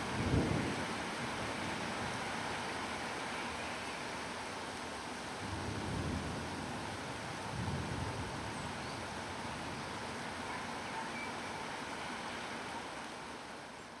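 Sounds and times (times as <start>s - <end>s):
rain falling on foliage: 0.0s - 14.0s.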